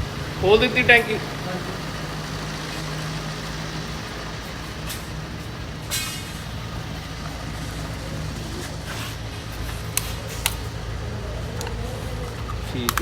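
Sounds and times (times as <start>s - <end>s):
diesel car engine idling: 0.0s - 13.0s
sharp clicks: 12.4s - 13.0s.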